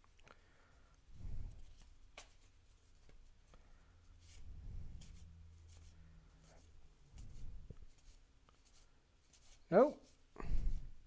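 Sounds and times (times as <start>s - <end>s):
cards being flipped by hand: 1.6s - 3.2s.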